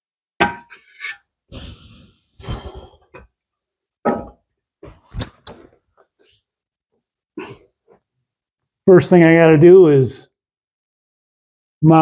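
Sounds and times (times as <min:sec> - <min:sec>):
short breathy hiss: 0:01.5 - 0:03.0.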